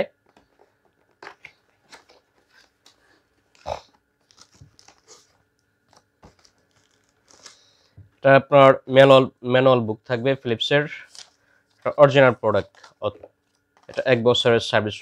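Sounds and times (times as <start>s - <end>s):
packaging crinkling and rustling: 0.4s - 7.9s, 10.9s - 14.2s
loud crackle of wrapping: 3.5s - 5.4s, 6.2s - 7.7s.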